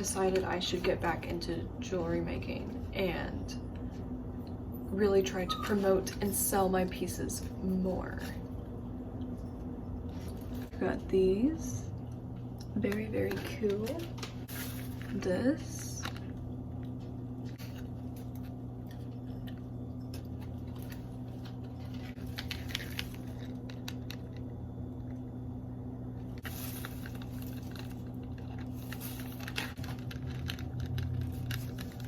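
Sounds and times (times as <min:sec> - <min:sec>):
steady low hum: 0:00.0 - 0:32.0
packaging clicks and crinkles: 0:12.9 - 0:25.2, 0:26.3 - 0:32.0.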